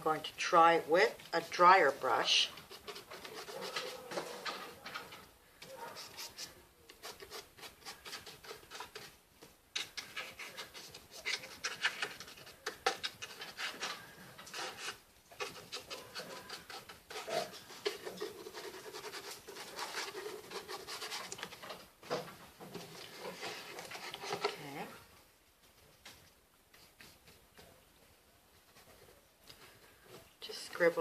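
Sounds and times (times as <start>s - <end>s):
paintbrush scrubbing on cardboard: 1.4s - 5.0s, 5.7s - 9.2s, 9.8s - 21.9s, 22.6s - 24.8s.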